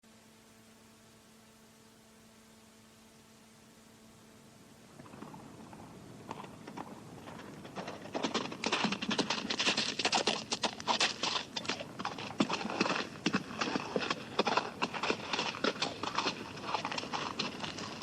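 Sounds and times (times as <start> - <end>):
horse hoofbeats: 5.0 - 18.0.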